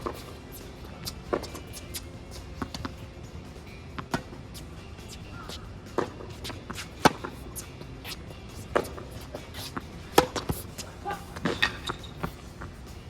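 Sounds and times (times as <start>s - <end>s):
ball bouncing on court: 0.0s - 12.8s
racket striking ball: 0.0s - 12.8s.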